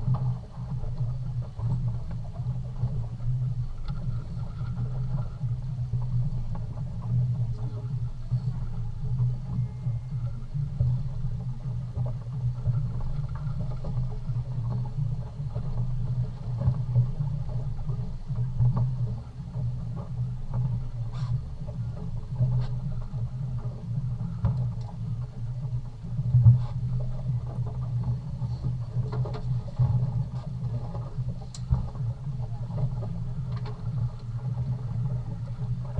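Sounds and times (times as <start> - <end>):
boat engine rumbling: 0.0 - 35.9.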